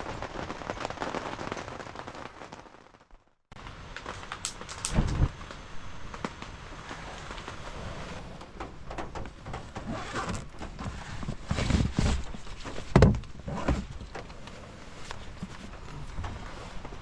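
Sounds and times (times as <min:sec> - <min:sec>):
knocks and thumps: 0:08.4 - 0:14.3.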